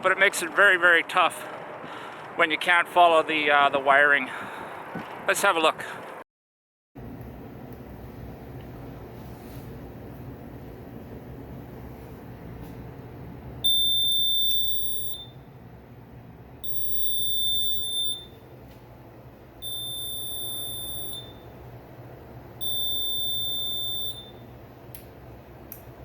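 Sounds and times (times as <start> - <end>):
low background hum: 7.0 - 26.0
piezo alarm beeps: 13.6 - 15.5, 16.6 - 18.4, 19.6 - 21.6, 22.6 - 24.5.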